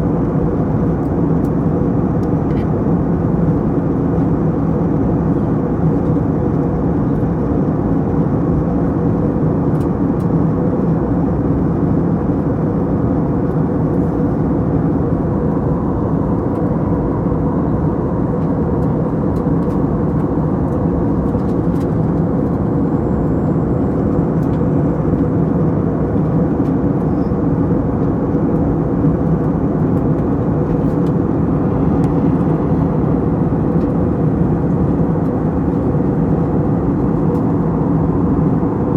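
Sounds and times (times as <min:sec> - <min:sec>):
jet engines and airflow drone: 0:00.0 - 0:38.9
low hums: 0:30.2 - 0:38.9.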